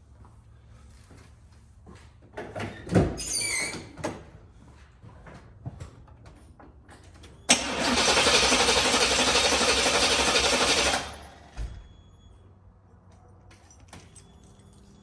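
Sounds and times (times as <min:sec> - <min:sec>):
car engine cranking: 0:07.5 - 0:11.6.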